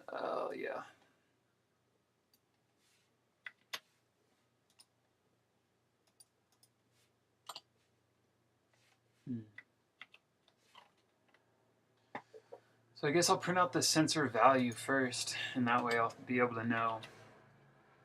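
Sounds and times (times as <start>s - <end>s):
computer keyboard keystrokes: 10.0s - 10.2s.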